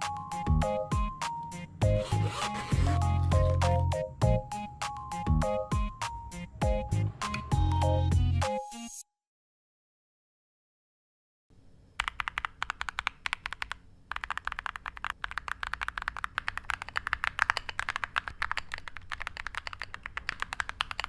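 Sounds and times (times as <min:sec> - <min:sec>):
fast keyboard typing: 0:12.0 - 0:21.0.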